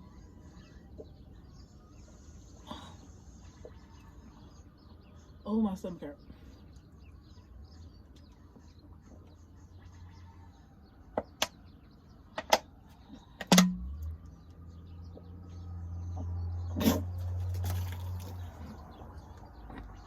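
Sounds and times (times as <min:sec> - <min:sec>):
low steady hum: 0:00.0 - 0:20.0
sharp clicks and knocks: 0:12.3 - 0:12.7, 0:13.4 - 0:14.1.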